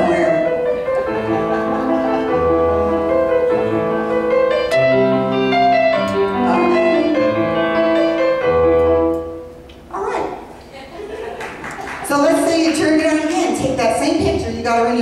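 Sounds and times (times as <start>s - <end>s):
slow keyboard chords: 0.0s - 9.9s
low bass line: 2.5s - 9.2s.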